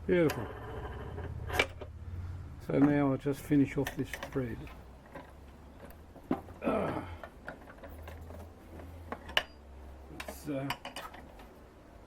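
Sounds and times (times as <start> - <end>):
scraping squeak: 0.2 - 1.8.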